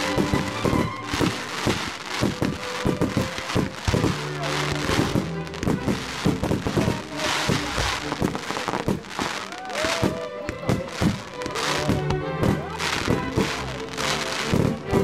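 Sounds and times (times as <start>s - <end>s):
fireworks bangs and crackles: 0.0s - 15.0s
music with held notes: 0.0s - 15.0s.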